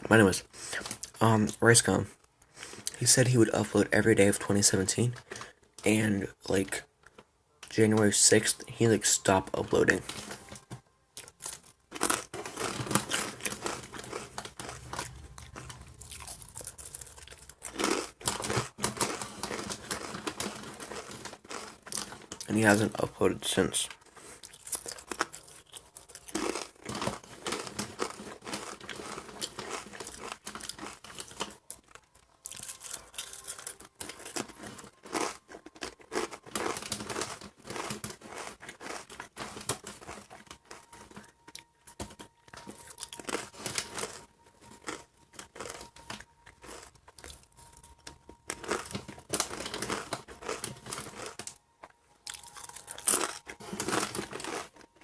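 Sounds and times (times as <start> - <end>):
chip bag crinkling: 11.2 - 41.4, 42.2 - 55.0
corn chips crunching: 11.2 - 55.0.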